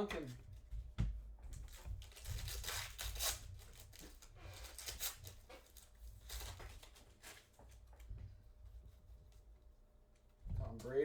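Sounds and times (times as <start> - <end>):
wrapper tearing and crinkling: 2.1 - 7.0.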